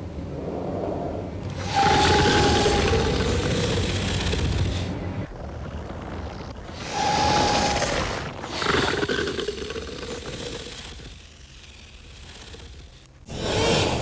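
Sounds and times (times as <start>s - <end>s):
creature rasping screech: 1.5s - 4.9s, 6.6s - 14.0s
creature hissing roar: 1.6s - 4.9s, 12.0s - 14.0s.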